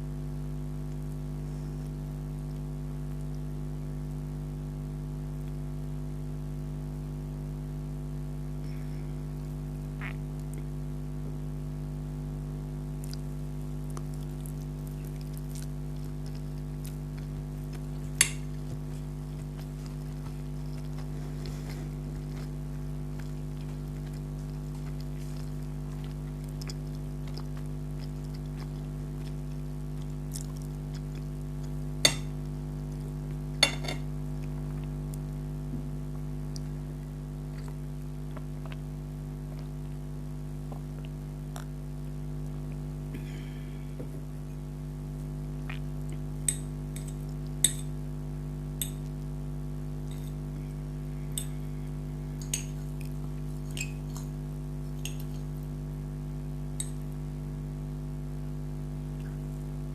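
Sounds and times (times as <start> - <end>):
electrical hum: 0.0 - 59.9
chewing and mouth sounds: 13.0 - 33.5, 34.4 - 35.4, 36.1 - 42.9, 45.2 - 48.0, 50.1 - 55.8.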